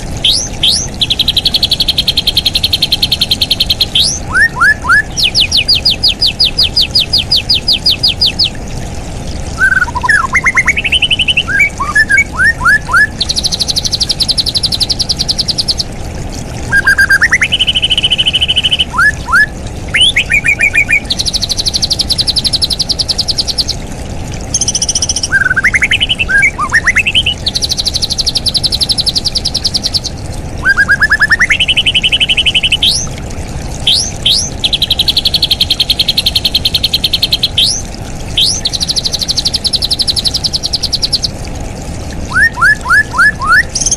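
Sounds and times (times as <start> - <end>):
rapid high bird trills: 0.0 - 8.6, 24.5 - 33.1, 33.8 - 37.8, 38.4 - 41.3
bird song with liquid phrases: 0.0 - 43.9.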